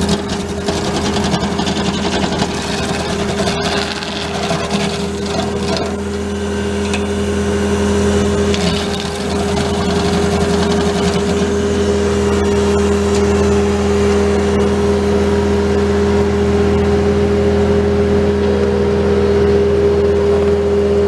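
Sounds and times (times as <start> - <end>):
wood grinding: 0.0 - 15.3
diesel engine droning: 0.0 - 21.0.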